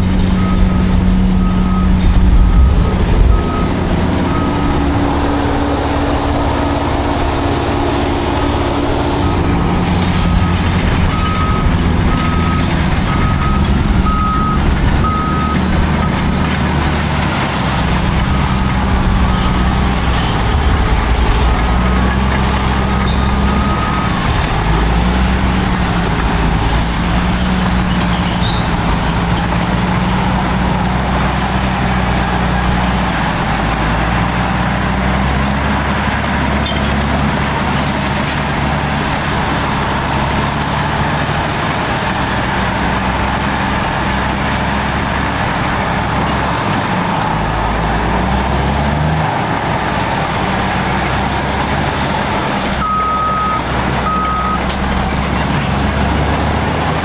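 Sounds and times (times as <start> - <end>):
reversing alarm beeping: 0.0 - 16.2, 19.0 - 25.5, 52.7 - 54.6
bulldozer diesel engines working: 0.0 - 57.0.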